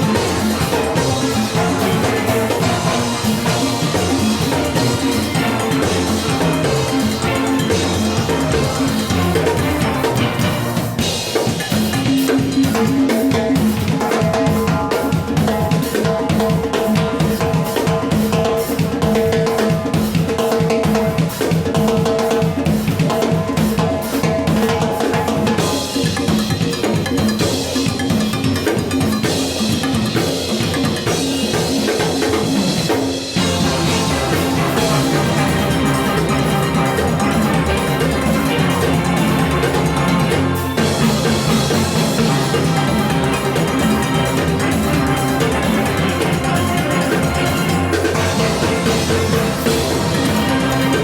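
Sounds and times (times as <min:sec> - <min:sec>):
bass line: 0:00.0 - 0:11.3, 0:33.4 - 0:51.0
steel pans playing: 0:00.0 - 0:12.0, 0:33.4 - 0:51.0
drum kit and percussion: 0:00.0 - 0:51.0.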